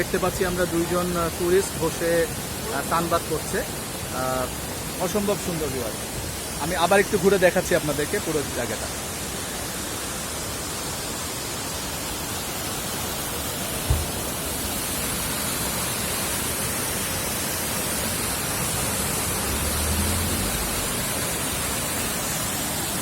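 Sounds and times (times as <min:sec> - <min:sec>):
waterfall rushing: 0:00.0 - 0:23.0
low thump: 0:13.8 - 0:14.4.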